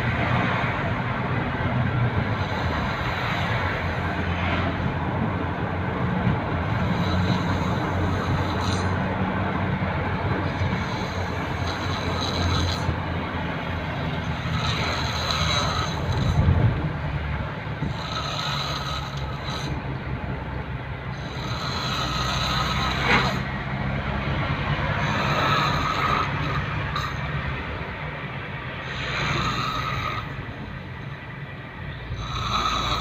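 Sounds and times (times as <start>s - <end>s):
steady low rumble: 0.0s - 18.1s
person snoring: 2.2s - 4.1s, 6.7s - 9.0s, 10.5s - 13.0s, 14.2s - 16.5s, 17.8s - 19.8s, 21.1s - 23.5s, 24.9s - 27.3s, 28.8s - 30.4s, 32.1s - 33.0s.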